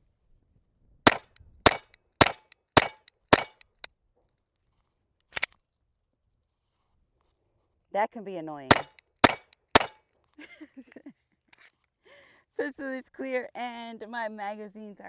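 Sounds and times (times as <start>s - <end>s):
pistol shots with ringing echo: 1.1s - 3.8s, 8.7s - 10.0s
quiet double crack: 1.1s - 3.9s, 8.7s - 10.0s.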